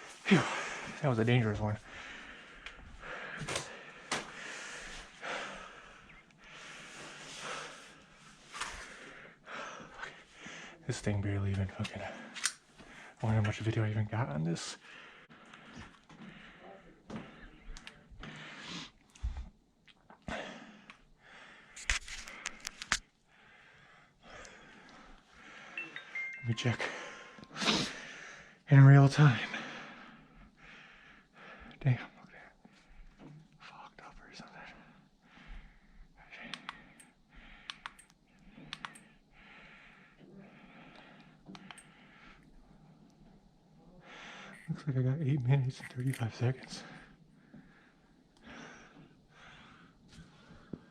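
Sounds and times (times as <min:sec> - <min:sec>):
camera handling rustling: 0:21.8 - 0:23.1
sharp clicks: 0:37.6 - 0:39.0
soft handling noise: 0:45.4 - 0:46.7.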